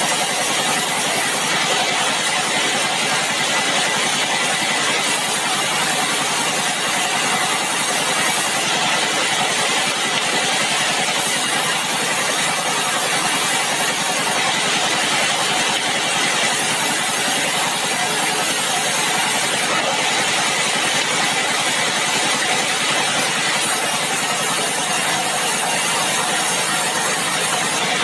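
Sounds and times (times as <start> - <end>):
sawmill machinery running: 0.0 - 28.0.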